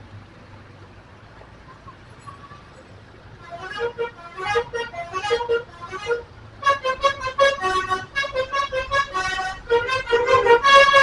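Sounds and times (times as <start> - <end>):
musical bus air horn: 3.4 - 11.0.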